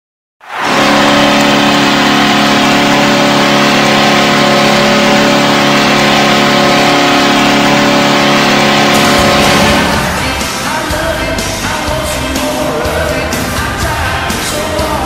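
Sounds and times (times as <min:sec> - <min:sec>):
arena goal horn blast: 0:00.5 - 0:10.6.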